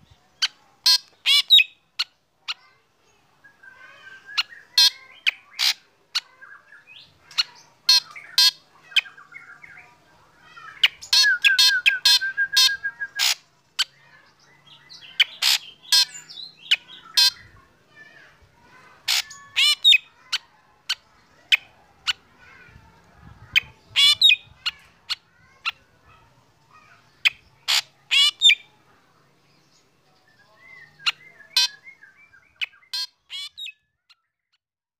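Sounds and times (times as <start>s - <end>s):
bird fast trill: 10.6s - 17.5s
bird singing whistled notes: 10.9s - 13.4s, 30.2s - 33.0s.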